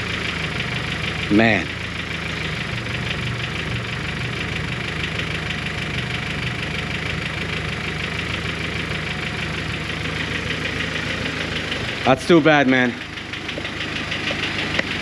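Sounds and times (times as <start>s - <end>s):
car engine idling: 0.0s - 15.0s
rapid engine ticking: 0.0s - 15.0s.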